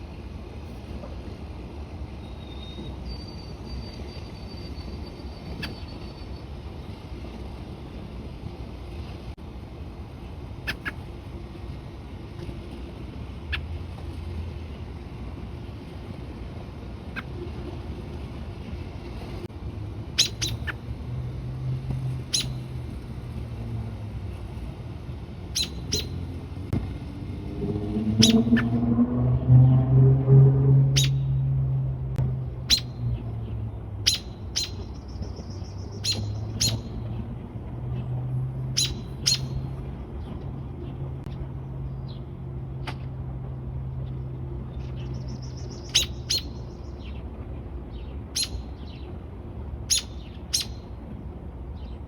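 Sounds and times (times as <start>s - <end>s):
low rumble of background noise: 0.0s - 52.0s
robin chirping: 2.2s - 6.4s, 20.2s - 20.8s, 22.3s - 22.7s, 25.5s - 26.2s, 28.2s - 28.7s, 30.9s - 31.4s, 32.6s - 33.3s, 34.0s - 37.0s, 38.7s - 39.6s, 44.7s - 47.2s, 48.0s - 49.1s, 49.9s - 50.9s.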